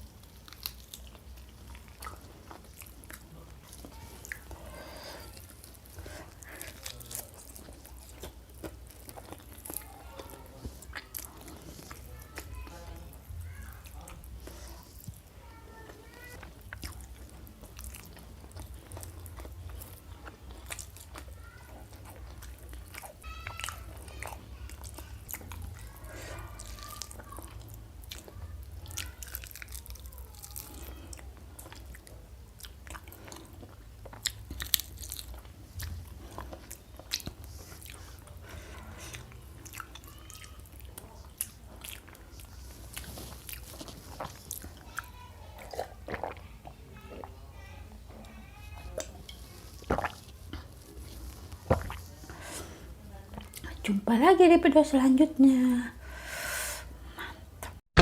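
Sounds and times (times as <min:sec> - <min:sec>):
person chewing crunchy food: 0:00.0 - 0:53.8
wet mouth sounds: 0:26.5 - 0:44.9, 0:45.6 - 0:47.4, 0:49.0 - 0:52.7.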